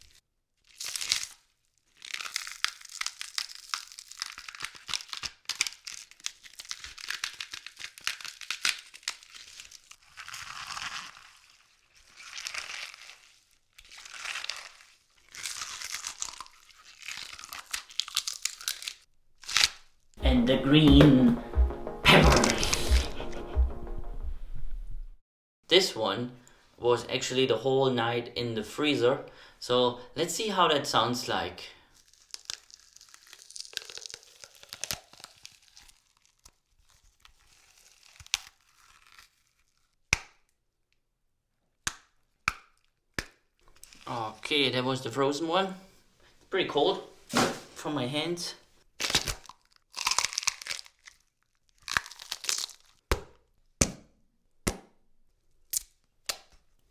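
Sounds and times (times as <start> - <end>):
raw vegetable crunching: 0.7 - 20.4, 32.0 - 40.0, 43.7 - 44.5, 49.0 - 53.1.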